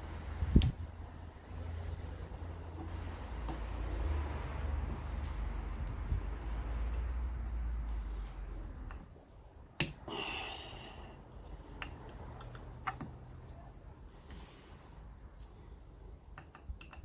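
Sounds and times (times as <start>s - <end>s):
fan parts clicking: 0.3s - 10.1s, 11.4s - 17.0s
light ticks: 5.2s - 7.1s.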